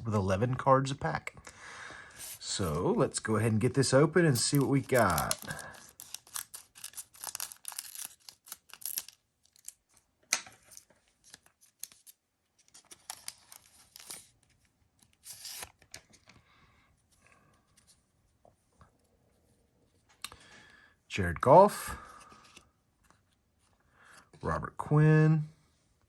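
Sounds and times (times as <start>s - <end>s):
wrapper tearing and crackling: 4.3s - 10.0s, 10.6s - 14.3s.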